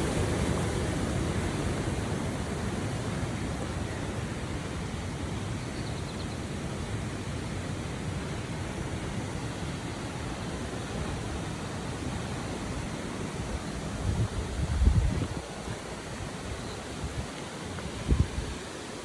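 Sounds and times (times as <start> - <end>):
waterfall rushing: 0.0 - 5.5.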